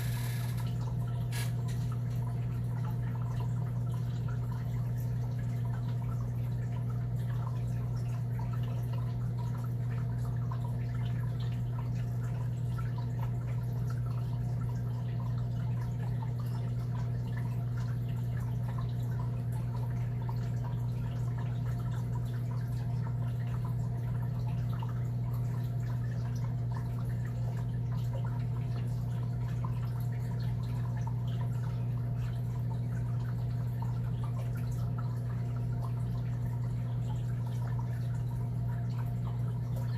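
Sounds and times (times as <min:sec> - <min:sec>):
low electrical hum: 0:00.0 - 0:39.9.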